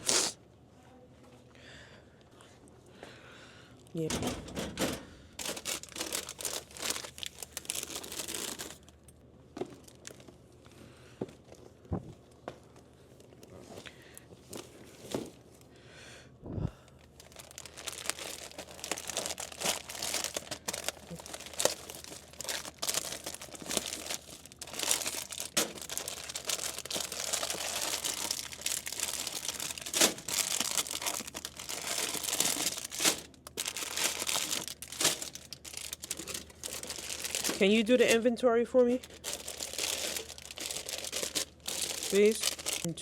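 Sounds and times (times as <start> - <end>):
plastic packaging crinkling: 5.4 - 10.4, 16.9 - 43.0.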